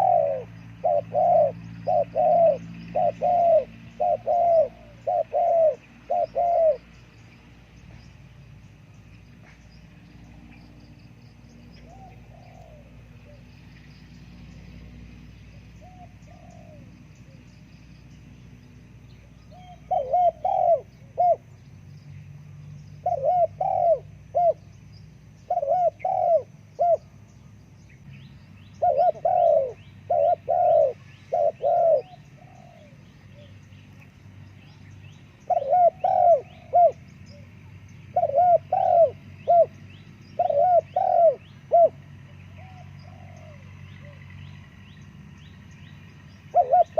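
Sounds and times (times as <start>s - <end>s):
dove cooing: 0.0s - 7.0s, 11.8s - 13.6s, 14.4s - 17.5s, 19.2s - 21.5s, 23.0s - 24.6s, 25.4s - 27.2s, 28.7s - 33.5s, 35.4s - 44.3s, 46.4s - 46.9s
small birds chirping: 0.0s - 46.9s.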